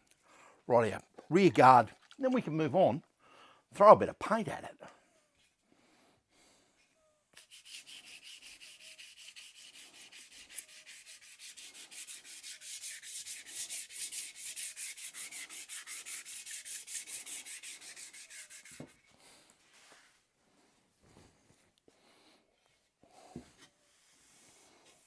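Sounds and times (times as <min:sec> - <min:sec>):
sandpaper rasping strokes: 0:07.4 - 0:19.0.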